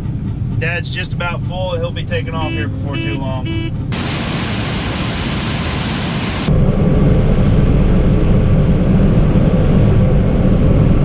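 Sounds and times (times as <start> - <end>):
machinery engines droning: 3.8 - 11.0
steady rushing hiss: 4.0 - 6.5.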